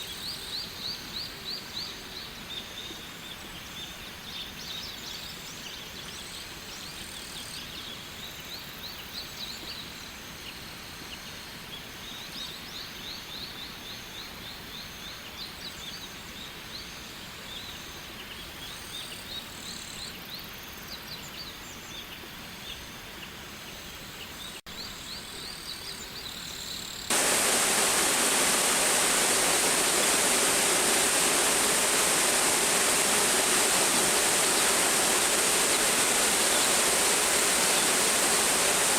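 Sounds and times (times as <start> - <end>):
flowing water: 27.1 - 38.9
loud waterfall rush: 27.1 - 38.9.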